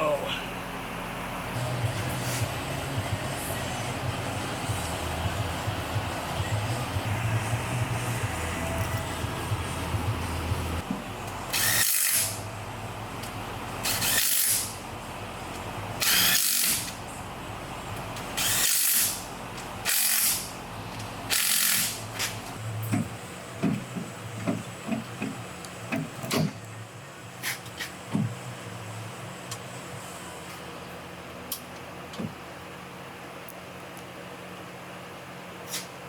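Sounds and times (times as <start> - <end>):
power tool driving bolts: 11.5 - 12.4, 13.8 - 14.7, 16.0 - 17.0, 18.4 - 19.2, 19.8 - 20.5, 21.3 - 22.4.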